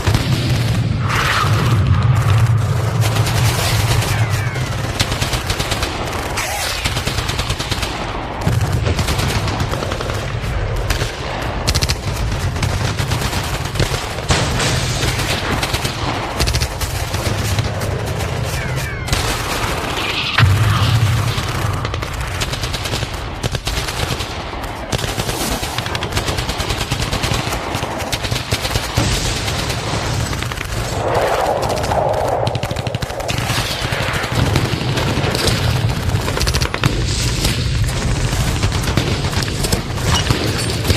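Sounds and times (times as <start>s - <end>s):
machine-gun fire: 0.0s - 31.0s, 31.7s - 40.9s
low rumble: 29.8s - 36.0s.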